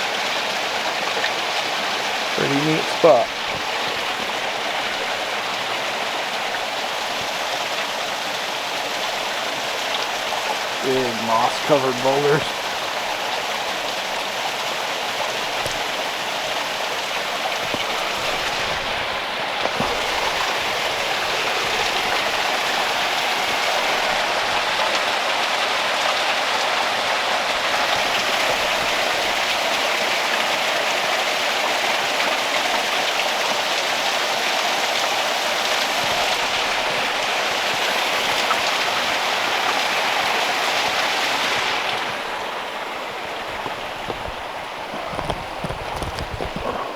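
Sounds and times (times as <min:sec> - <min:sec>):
waterfall splashing over rocks: 0:00.0 - 0:46.9.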